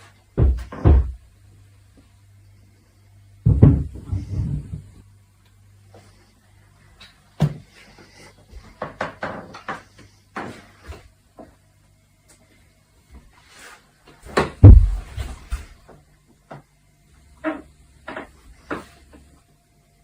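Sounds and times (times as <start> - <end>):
heavy thump: 14.6 - 15.7.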